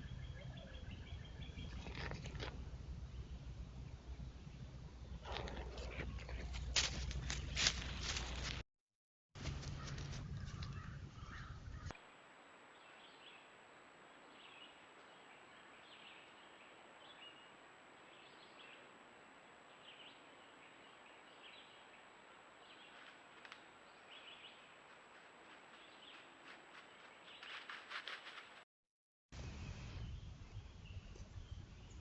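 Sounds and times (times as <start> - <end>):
faint bird chirps: 0.0 - 2.2
steady low hiss: 11.0 - 26.8.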